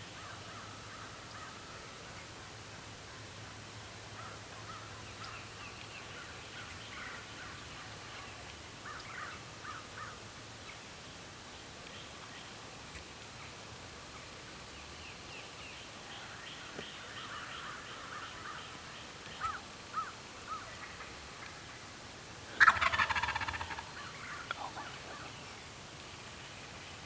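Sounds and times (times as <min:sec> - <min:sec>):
turkey gobbling: 0:22.5 - 0:25.4
soft short turkey calls: 0:22.5 - 0:25.6.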